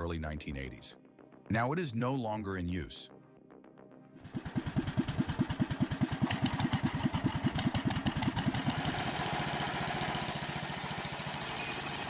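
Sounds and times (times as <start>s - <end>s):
small engine chugging: 4.2s - 12.0s.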